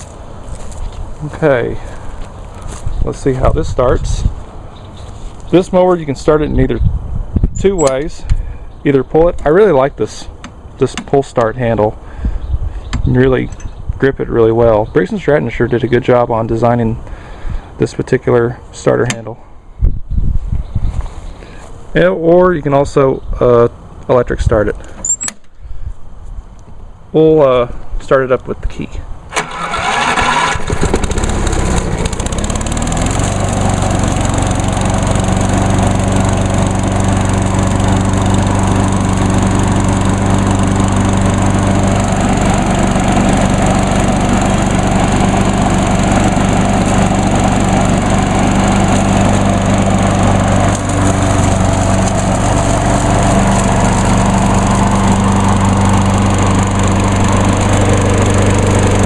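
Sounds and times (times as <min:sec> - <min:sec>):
lawn mower engine running: 0:00.0 - 0:06.2, 0:29.3 - 0:59.0.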